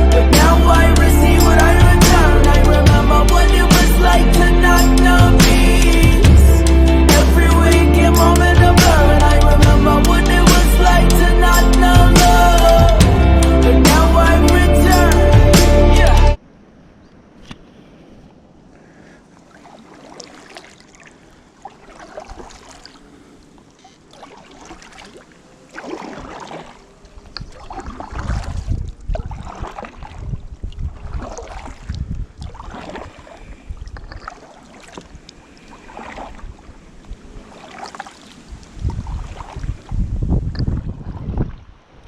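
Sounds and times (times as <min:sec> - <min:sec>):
paddle splashing in water: 0:18.8 - 0:42.0.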